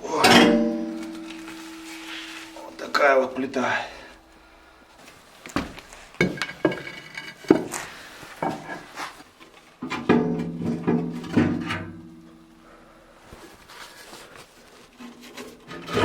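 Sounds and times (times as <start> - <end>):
plucked string instrument music: 0.0 - 3.0.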